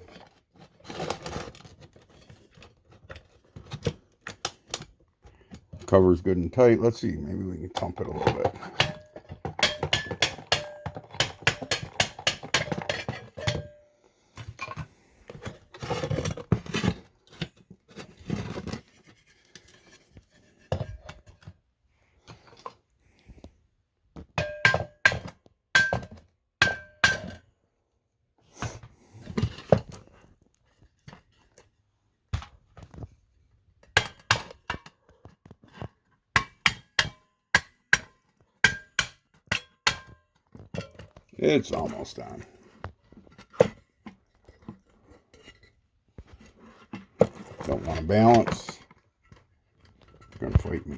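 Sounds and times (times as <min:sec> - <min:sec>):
metal parts knocking and clinking: 0:07.7 - 0:13.8.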